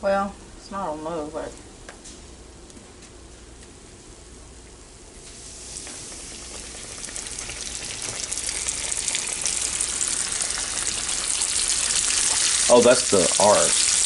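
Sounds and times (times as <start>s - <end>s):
meat frying in a pan: 5.3s - 14.0s.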